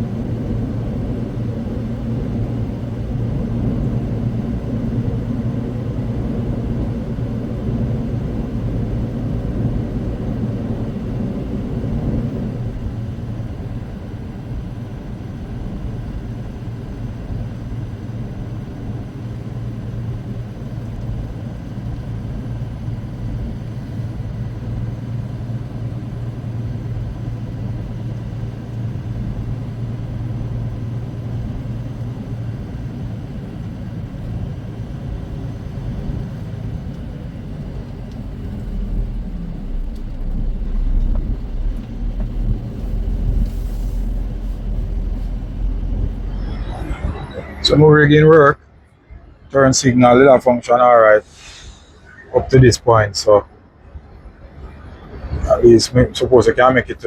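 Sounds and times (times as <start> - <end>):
truck diesel engine droning: 0.0 - 57.0
road noise: 19.8 - 57.0.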